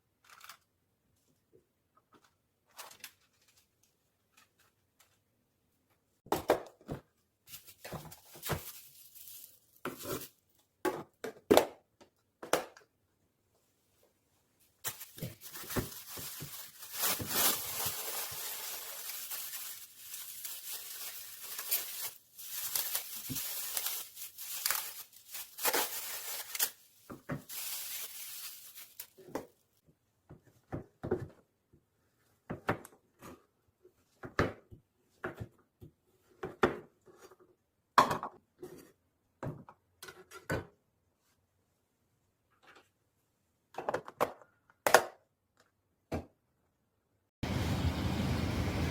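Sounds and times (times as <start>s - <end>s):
plastic packaging rustling and tearing: 0.2s - 0.7s, 2.7s - 5.1s, 7.5s - 10.6s, 14.8s - 29.4s.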